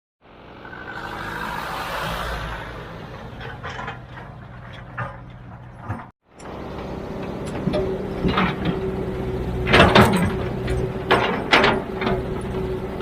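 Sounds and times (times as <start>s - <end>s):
heavy diesel machinery running: 0.2s - 13.0s
sharp metal knocks and clanks: 9.6s - 12.6s.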